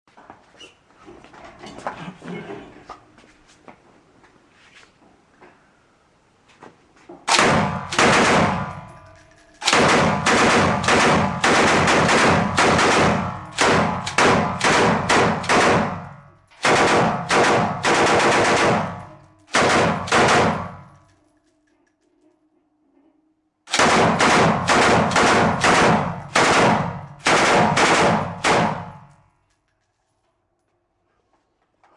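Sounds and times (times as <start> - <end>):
machine gun firing bursts: 7.3 - 8.9, 9.6 - 20.8, 23.7 - 29.0.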